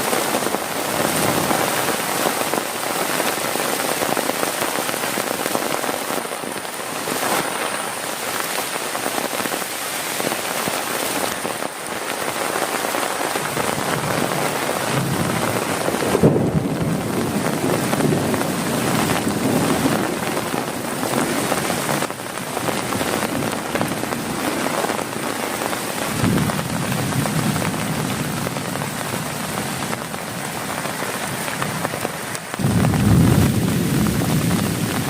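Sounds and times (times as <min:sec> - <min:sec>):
heavy rain on a tarp: 0:00.0 - 0:35.0
thunder rumbling: 0:13.4 - 0:30.9, 0:31.6 - 0:35.0.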